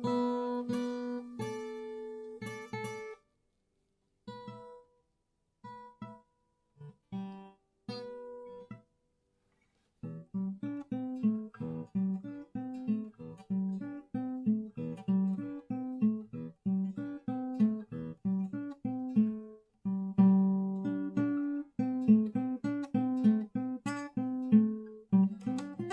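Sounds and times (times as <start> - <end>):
acoustic guitar chord ringing: 0.0 - 3.2
rhythmic guitar strumming: 0.0 - 3.2, 4.3 - 4.9, 6.8 - 8.8, 10.0 - 25.9.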